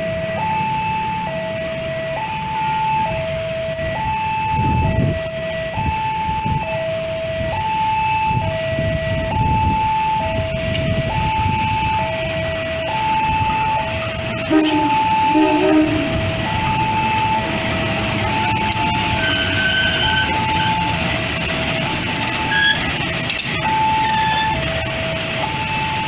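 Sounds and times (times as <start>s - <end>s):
two-tone warning signal: 3.8s - 26.0s
train rumbling past: 10.2s - 26.0s
low horn-like tones: 14.3s - 20.9s.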